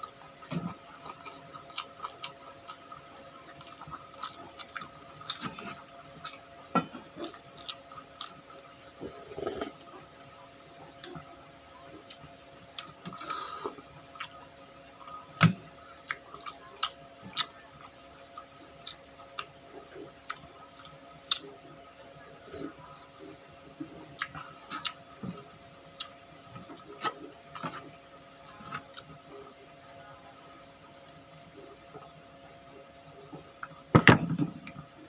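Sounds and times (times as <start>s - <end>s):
person chewing with mouth smacks: 24.1s - 25.4s.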